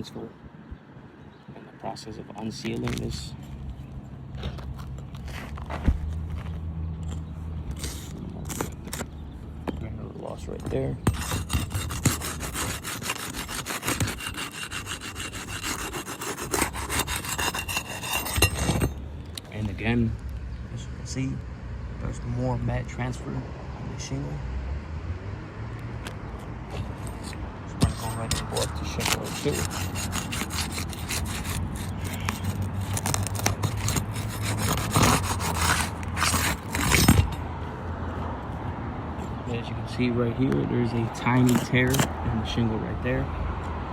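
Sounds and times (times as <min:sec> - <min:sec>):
tool scraping under shingle: 0:02.4 - 0:03.6, 0:04.3 - 0:19.9, 0:26.7 - 0:37.4, 0:40.9 - 0:42.2.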